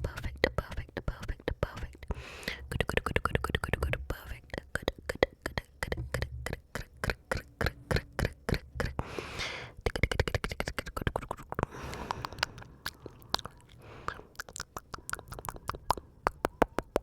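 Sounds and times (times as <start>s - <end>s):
wet mouth clicks and smacks: 0.0s - 9.0s, 9.8s - 17.0s
breathy hiss: 9.0s - 9.8s.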